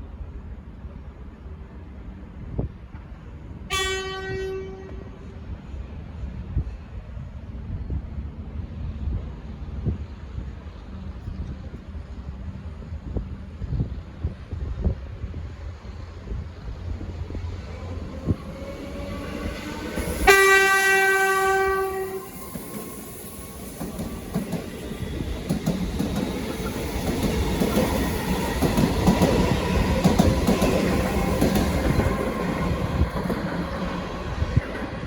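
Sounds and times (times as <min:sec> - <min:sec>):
train rumble: 0:00.0 - 0:35.0
electric train horn blast: 0:03.7 - 0:05.4, 0:20.0 - 0:23.1.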